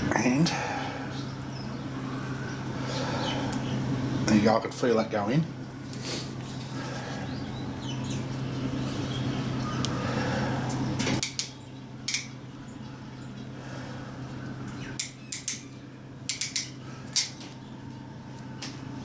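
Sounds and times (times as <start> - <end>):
low steady hum: 0.0 - 19.0
sharp clicks of wiring parts: 10.7 - 12.4, 15.0 - 15.7, 16.3 - 17.6.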